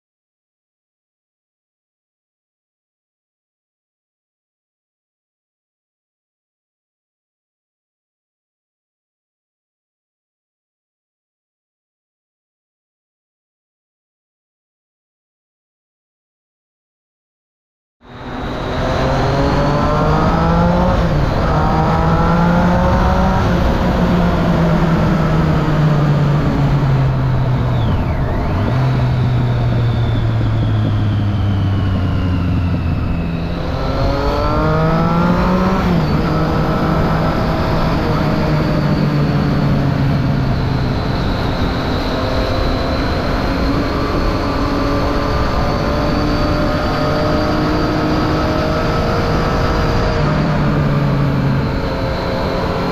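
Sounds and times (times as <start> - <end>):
road and wind noise: 18.0 - 52.9.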